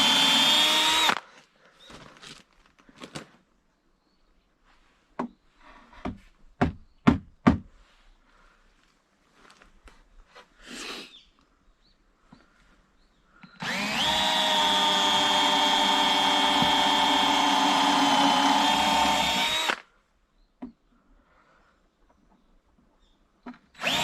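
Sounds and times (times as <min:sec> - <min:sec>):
electric drill motor spinning: 0:00.0 - 0:01.2, 0:13.6 - 0:19.8, 0:23.8 - 0:24.0
faint handling noises: 0:08.7 - 0:10.6.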